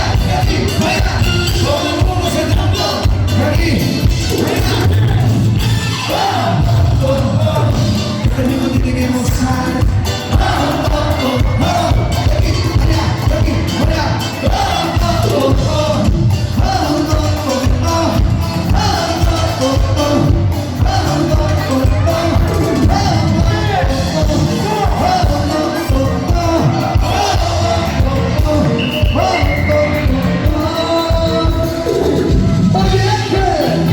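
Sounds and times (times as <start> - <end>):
live band playing: 0.0 - 33.9
person singing: 6.0 - 33.9.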